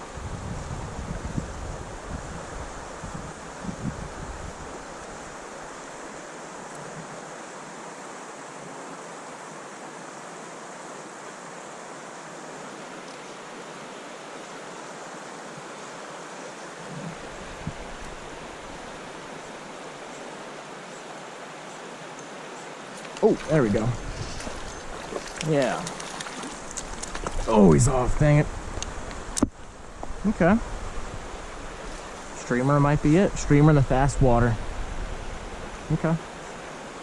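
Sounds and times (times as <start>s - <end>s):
wind buffeting microphone: 0.0s - 5.0s, 16.9s - 19.0s, 23.3s - 36.1s
flowing creek water: 0.0s - 37.0s.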